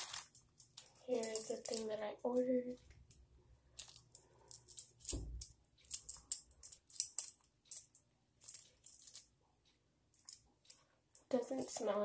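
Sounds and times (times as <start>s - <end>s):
packaging crinkling: 0.0s - 1.8s.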